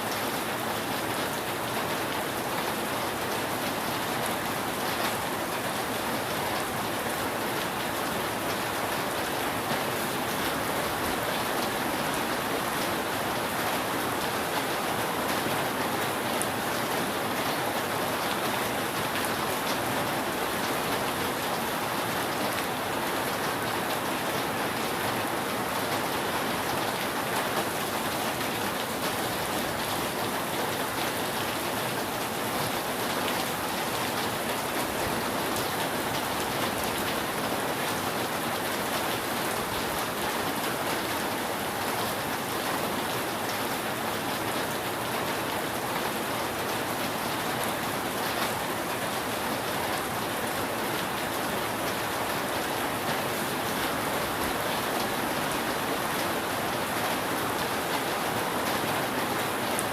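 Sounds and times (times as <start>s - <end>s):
rain on a roof: 0.0s - 59.9s.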